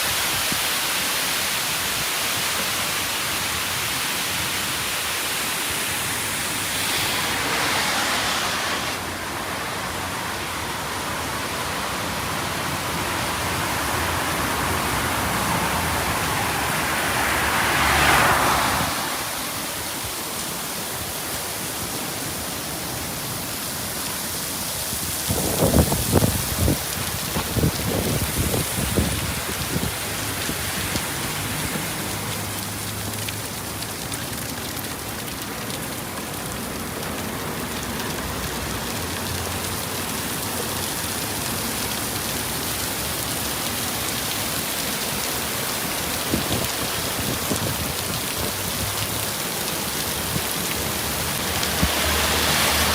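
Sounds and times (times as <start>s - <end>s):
waterfall rushing: 0.0s - 52.9s.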